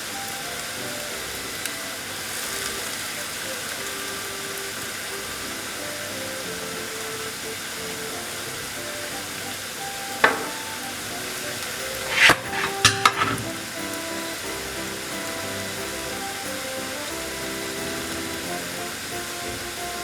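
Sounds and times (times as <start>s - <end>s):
food deep-frying in hot oil: 0.0s - 20.0s
utensil knocking against pan: 10.2s - 10.6s.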